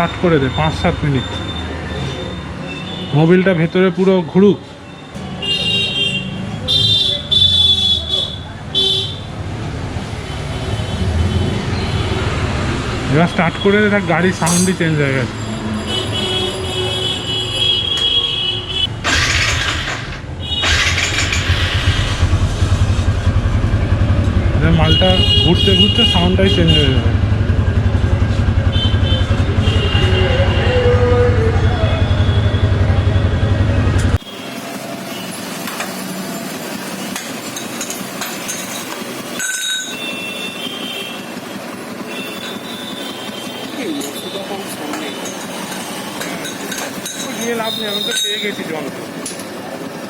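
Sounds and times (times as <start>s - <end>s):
motorcycle engine starting and idling: 18.9s - 25.7s
metal hand tools clinking: 37.4s - 40.0s, 44.9s - 48.6s.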